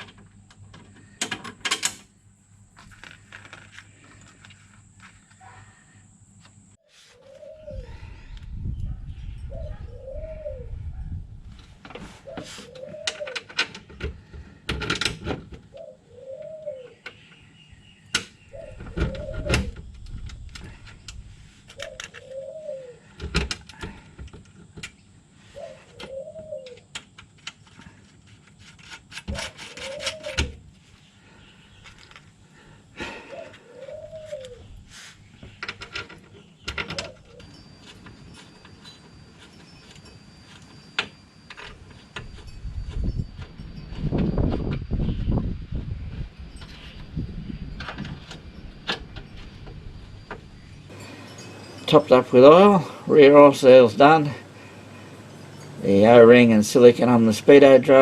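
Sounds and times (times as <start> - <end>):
pigeon cooing: 7.1 - 8.4, 9.4 - 11.1, 12.1 - 13.6, 15.7 - 17.0, 18.5 - 19.9, 21.7 - 23.4, 25.4 - 26.9, 29.3 - 30.6, 33.0 - 34.8, 36.8 - 37.8.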